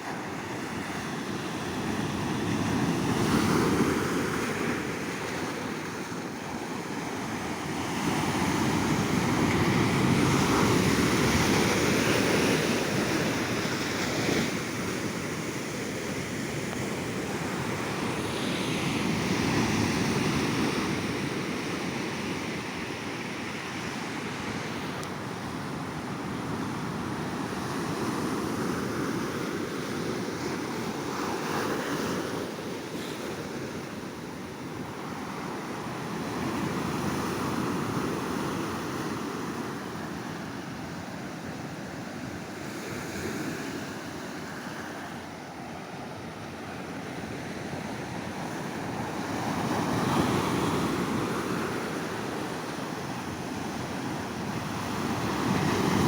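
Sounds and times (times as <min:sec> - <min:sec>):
ocean waves breaking on shore: 0:00.0 - 0:56.0.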